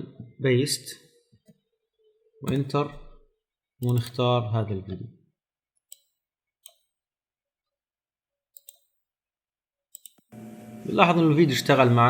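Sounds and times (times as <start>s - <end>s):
computer mouse clicks: 3.8s - 4.2s, 5.8s - 6.9s, 8.5s - 9.0s, 9.9s - 10.3s.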